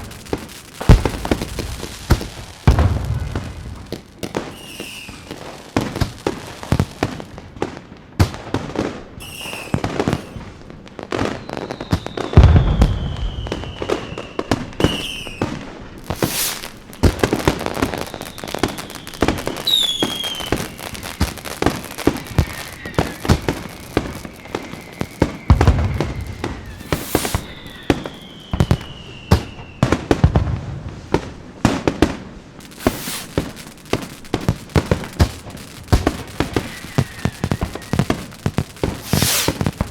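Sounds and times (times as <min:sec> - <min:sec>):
deep firework booms: 0:00.0 - 0:07.6, 0:11.9 - 0:39.9
fireworks popping and crackling: 0:00.0 - 0:39.9
firework whistles sliding down: 0:04.2 - 0:07.2, 0:09.2 - 0:30.3, 0:32.6 - 0:39.9.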